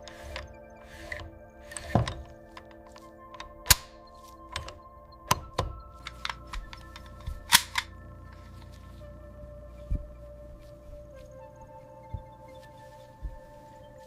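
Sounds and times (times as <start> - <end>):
metallic gun parts clicking: 0.0 - 8.0
background music: 0.0 - 14.0.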